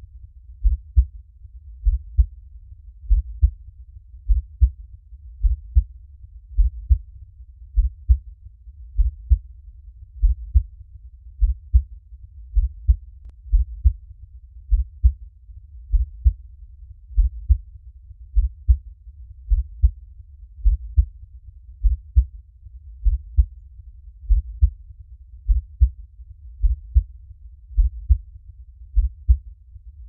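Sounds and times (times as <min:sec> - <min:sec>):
slow heartbeat thumps: 0:00.6 - 0:01.1, 0:01.8 - 0:02.4, 0:03.0 - 0:03.6, 0:04.2 - 0:04.8, 0:05.4 - 0:05.9, 0:06.6 - 0:07.1, 0:07.7 - 0:08.2, 0:09.0 - 0:09.5, 0:10.2 - 0:10.7, 0:11.4 - 0:11.9, 0:12.6 - 0:14.0, 0:14.7 - 0:15.2, 0:15.9 - 0:16.4, 0:17.1 - 0:17.6, 0:18.3 - 0:18.8, 0:19.5 - 0:20.0, 0:20.6 - 0:21.1, 0:21.8 - 0:22.3, 0:23.0 - 0:23.6, 0:24.2 - 0:24.8, 0:25.4 - 0:26.0, 0:26.6 - 0:27.1, 0:27.7 - 0:28.3, 0:28.9 - 0:29.4.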